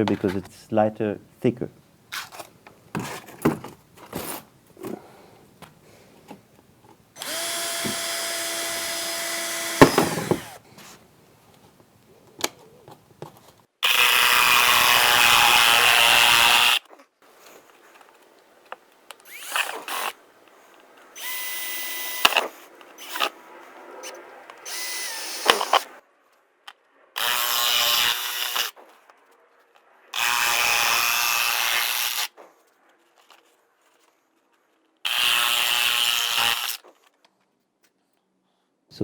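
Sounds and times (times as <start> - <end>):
power tool cutting plastic: 7.2 - 10.6, 13.8 - 16.9, 19.2 - 20.2, 21.2 - 23.4, 24.0 - 25.9, 27.2 - 28.8, 30.2 - 32.3, 35.1 - 36.8.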